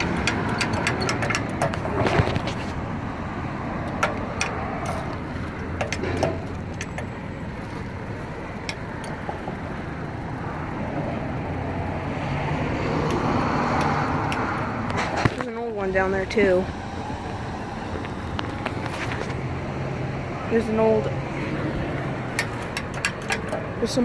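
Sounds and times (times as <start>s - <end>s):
sharp clicks: 0.0s - 2.5s, 22.3s - 23.7s
road traffic passing: 0.0s - 24.0s.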